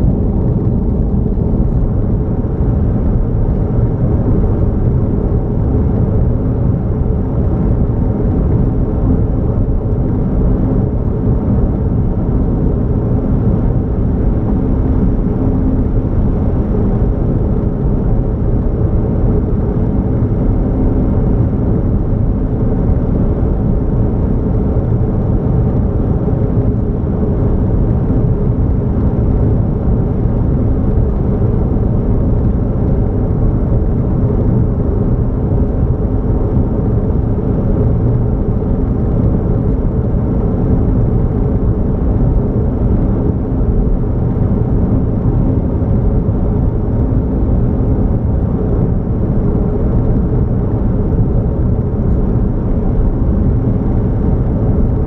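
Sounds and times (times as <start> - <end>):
car driving with low rumble: 0.0 - 55.0.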